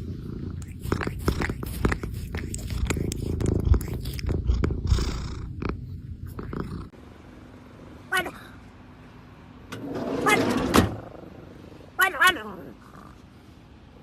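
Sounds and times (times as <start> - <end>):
cat purring: 0.0 - 7.0.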